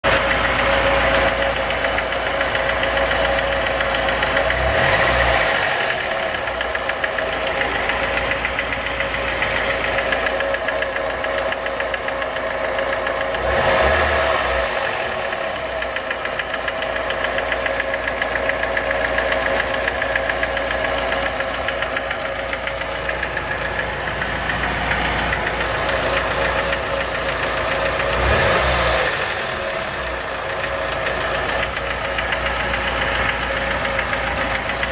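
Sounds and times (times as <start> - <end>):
car engine running: 0.0 - 34.9
rapid engine knock: 0.0 - 34.9.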